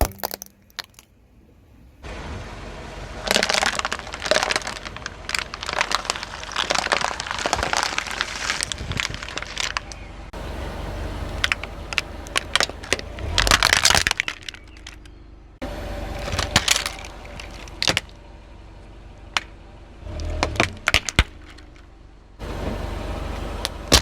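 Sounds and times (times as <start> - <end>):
tyre crushing brittle objects: 0.0 - 1.1, 3.2 - 10.1, 11.4 - 15.2, 16.1 - 18.2, 20.1 - 21.9, 23.6 - 24.0
car rumble: 0.0 - 24.0.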